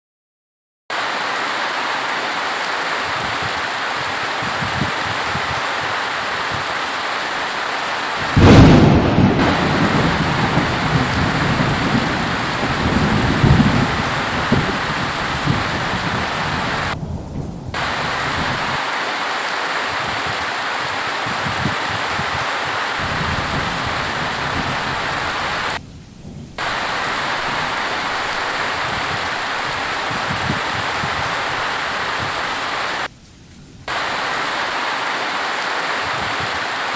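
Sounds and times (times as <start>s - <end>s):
heavy rain: 0.9s - 36.9s
thunderclap rolling into rumble: 8.2s - 18.9s, 19.9s - 33.1s.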